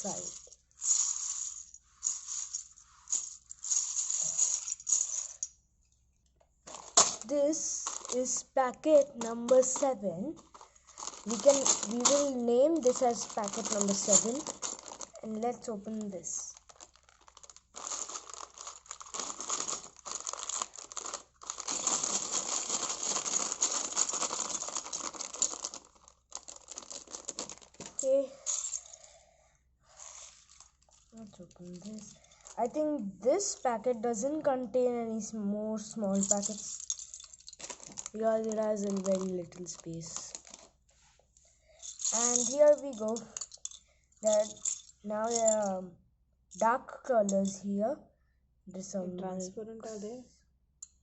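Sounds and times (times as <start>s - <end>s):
plastic bags crinkling: 0.0s - 5.4s, 6.6s - 8.4s, 9.0s - 28.9s, 29.9s - 32.6s, 36.2s - 40.8s, 41.9s - 45.6s
small plastic bricks clinking: 0.0s - 5.5s, 6.7s - 8.4s, 9.0s - 15.2s, 16.0s - 28.9s, 36.2s - 40.7s, 41.9s - 45.7s.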